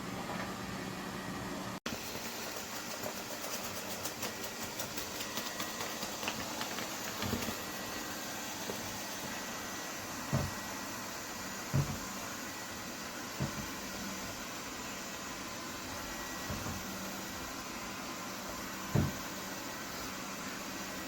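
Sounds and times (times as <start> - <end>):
robot vacuum whirring: 1.9 - 10.8.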